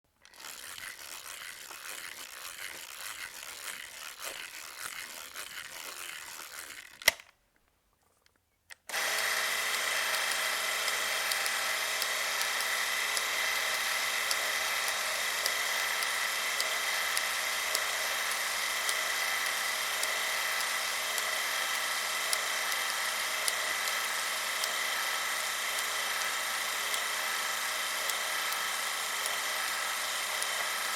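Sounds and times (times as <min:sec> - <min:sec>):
clockwork motor whirring: 0:00.2 - 0:07.2, 0:08.8 - 0:30.9
camera mechanism rattling: 0:00.2 - 0:07.4.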